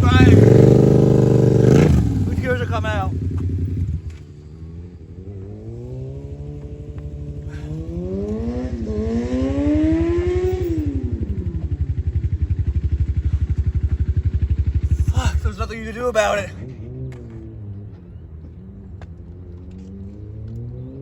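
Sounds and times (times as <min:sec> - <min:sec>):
motorcycle engine accelerating: 0:00.0 - 0:21.0.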